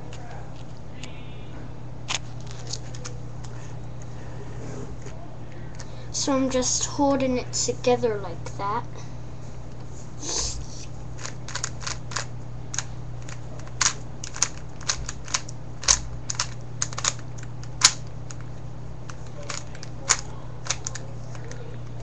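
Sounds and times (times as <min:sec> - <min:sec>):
steady low hum: 0:00.0 - 0:22.0
stiff paper crinkling: 0:02.2 - 0:03.2.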